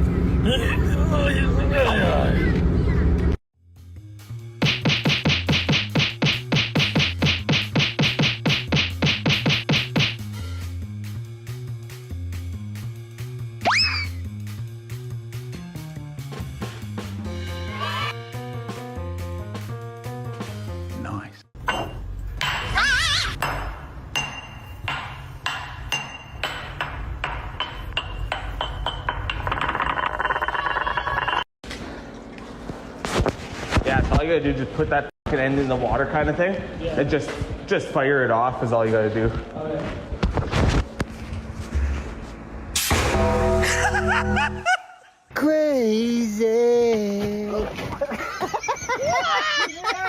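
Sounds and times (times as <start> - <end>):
fast drum beat: 4.6 - 10.2
sharp ringing metallic strikes: 23.4 - 27.0.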